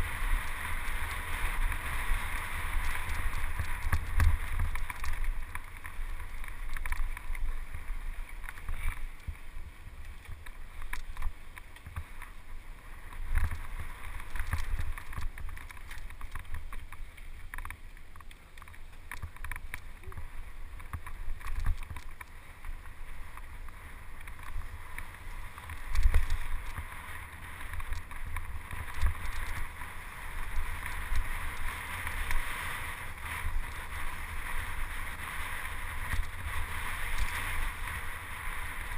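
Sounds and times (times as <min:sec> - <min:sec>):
bike rattling and knocking: 0:00.0 - 0:09.4, 0:13.0 - 0:38.0.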